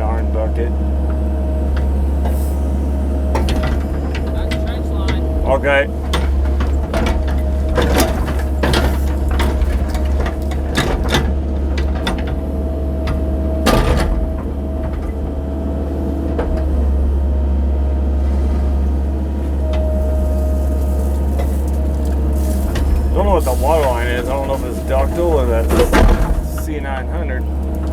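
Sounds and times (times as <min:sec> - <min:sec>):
excavator engine drone: 0:00.0 - 0:27.9
hydraulic whine: 0:00.0 - 0:27.9
bucket clunks and knocks: 0:01.7 - 0:12.4, 0:19.5 - 0:27.2.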